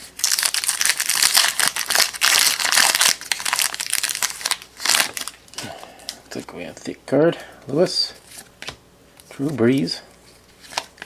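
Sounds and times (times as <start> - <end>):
wrapper crinkling and tearing: 0.0 - 5.6, 10.6 - 11.0.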